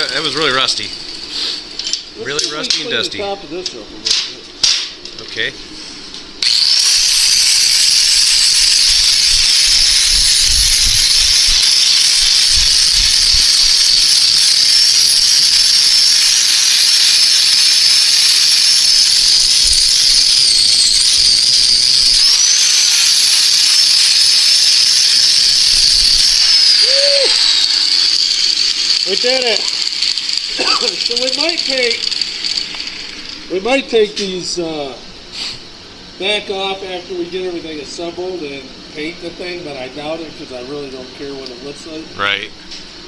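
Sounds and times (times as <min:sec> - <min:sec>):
angle grinder grinding steel: 0:00.0 - 0:01.1, 0:06.4 - 0:33.7.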